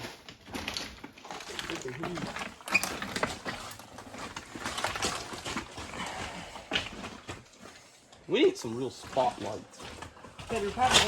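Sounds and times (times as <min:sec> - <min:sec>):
footsteps crunching on loose rock: 0:00.0 - 0:07.8.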